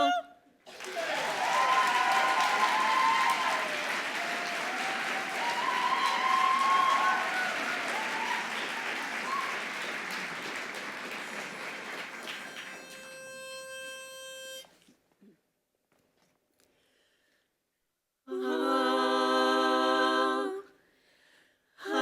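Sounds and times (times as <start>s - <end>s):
audience applauding and cheering: 0.7s - 13.1s
pitch pipe note: 12.4s - 14.7s.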